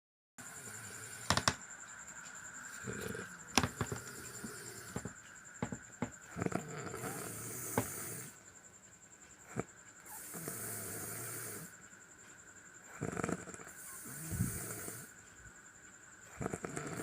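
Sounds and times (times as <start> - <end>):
faint high whine: 0.4 - 17.0
person snoring: 0.5 - 1.6, 2.7 - 8.4, 9.5 - 11.7, 12.9 - 15.1, 16.3 - 17.0.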